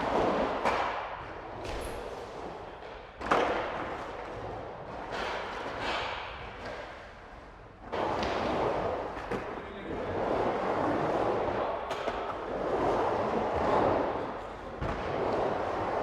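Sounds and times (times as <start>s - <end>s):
skateboard clack: 0.0s - 7.1s, 7.8s - 9.6s, 10.2s - 16.0s
skateboard wheels rolling on pavement: 10.0s - 16.0s.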